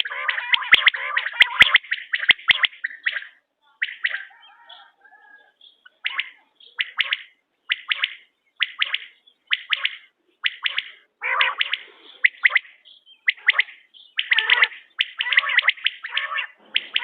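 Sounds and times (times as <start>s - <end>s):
quail calling: 0.0s - 17.0s.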